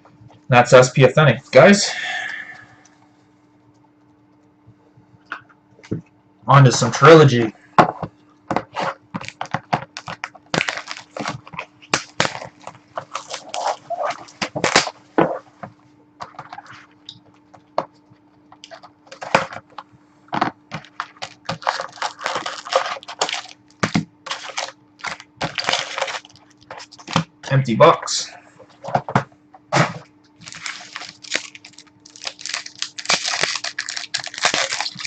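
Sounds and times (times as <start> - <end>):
plastic wrapping crinkling: 8.7 - 15.4, 18.1 - 27.3, 29.8 - 35.0
box being torn open: 8.8 - 14.9, 21.0 - 27.2, 29.8 - 35.0.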